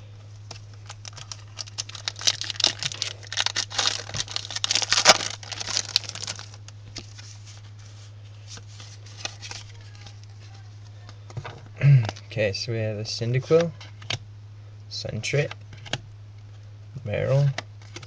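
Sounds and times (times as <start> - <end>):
steady low hum: 0.0 - 18.0
foil wrapper tearing and crinkling: 0.6 - 6.7.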